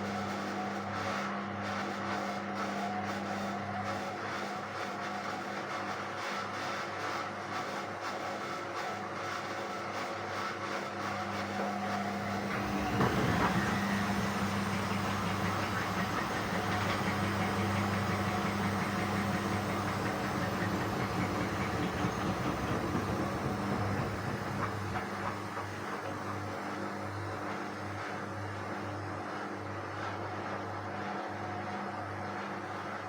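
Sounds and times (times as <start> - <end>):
washing machine motor humming: 11.2 - 29.4.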